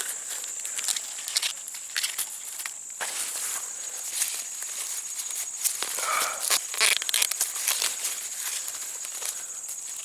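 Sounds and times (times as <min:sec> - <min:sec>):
dry corn husks rustling: 0:00.0 - 0:10.0
sharp crackles: 0:05.2 - 0:09.4.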